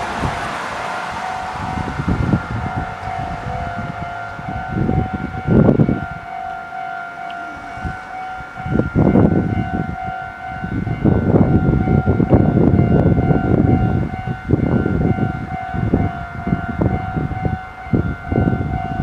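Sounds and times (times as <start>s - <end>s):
steady high tone: 0.0s - 14.1s
electric train running: 0.0s - 19.0s.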